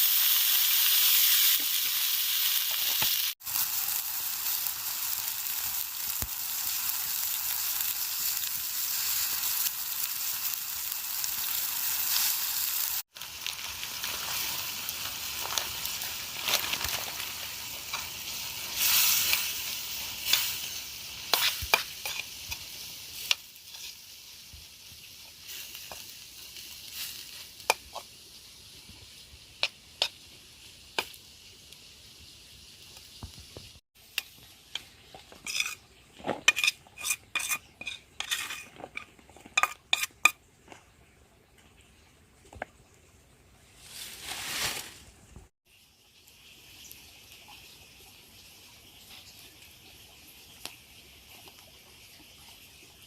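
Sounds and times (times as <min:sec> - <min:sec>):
grubs sizzling in frying: 0:00.0 - 0:40.9, 0:43.8 - 0:53.0
pops and crackles: 0:15.0 - 0:18.2.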